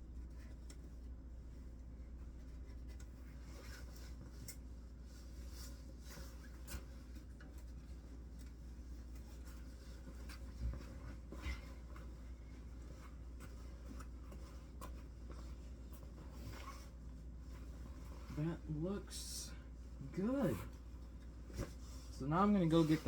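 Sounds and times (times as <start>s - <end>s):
low steady hum: 0.0s - 23.0s
fabric cape rustling: 19.8s - 23.0s.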